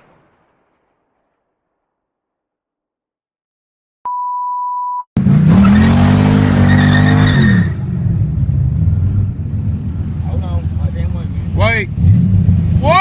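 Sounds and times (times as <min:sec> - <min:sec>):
electronic beep: 0:04.1 - 0:05.1
car engine starting and revving: 0:05.2 - 0:13.0.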